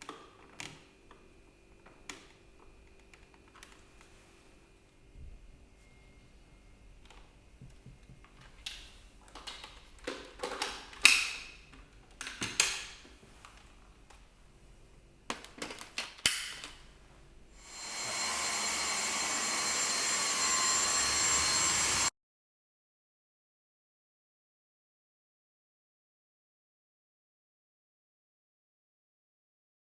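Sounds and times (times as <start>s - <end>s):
clicks and knocks of handling: 7.0s - 14.3s
vacuum motor high whine: 17.6s - 22.1s.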